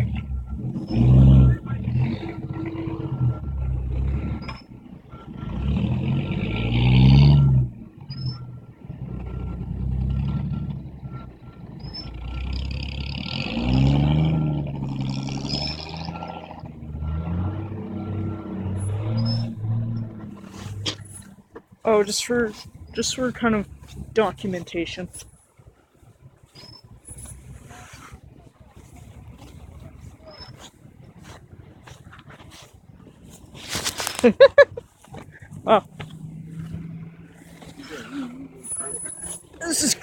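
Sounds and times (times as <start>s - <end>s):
reverse alarm beeping: 0.0s - 5.6s, 7.3s - 14.5s, 15.3s - 20.4s
traffic idling and moving: 0.0s - 40.0s.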